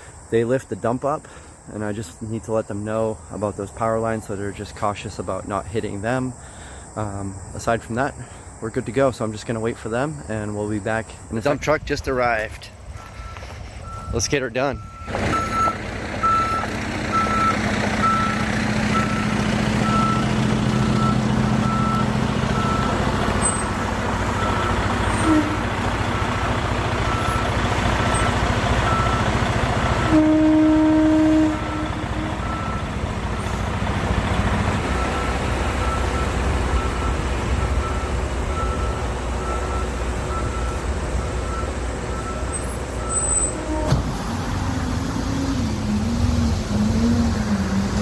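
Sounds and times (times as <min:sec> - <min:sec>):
diesel engine running: 0:09.7 - 0:48.0
backup alarm beeping: 0:13.0 - 0:25.4, 0:27.1 - 0:27.5, 0:28.9 - 0:29.4, 0:31.7 - 0:33.6, 0:34.9 - 0:43.8
low loud tone: 0:14.8 - 0:26.0, 0:30.0 - 0:33.8.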